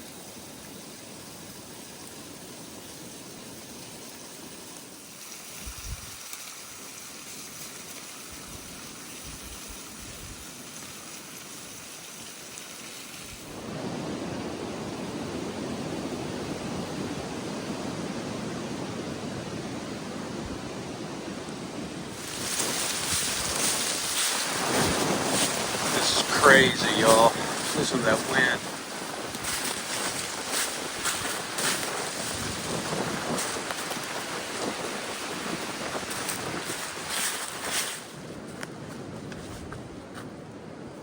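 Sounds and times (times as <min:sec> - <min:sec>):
small waterfall rushing: 0:00.0 - 0:20.4, 0:21.2 - 0:38.2
loud hiss: 0:22.1 - 0:38.1.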